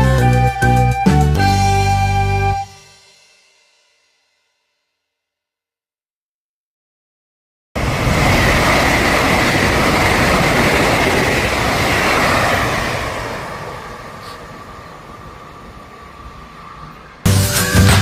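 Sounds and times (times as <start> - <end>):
train passing: 7.8 - 18.0.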